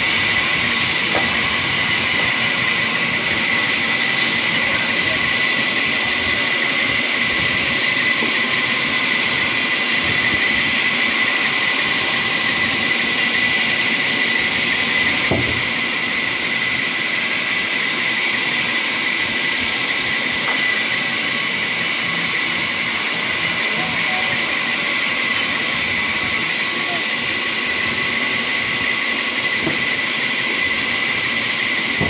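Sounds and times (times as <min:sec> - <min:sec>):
sawmill machinery running: 0:00.0 - 0:32.0.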